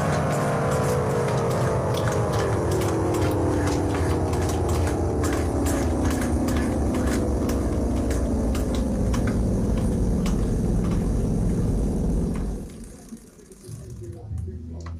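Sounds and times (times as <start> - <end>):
siren winding down: 0.0 - 13.0
low rumble with clicks: 0.0 - 14.9.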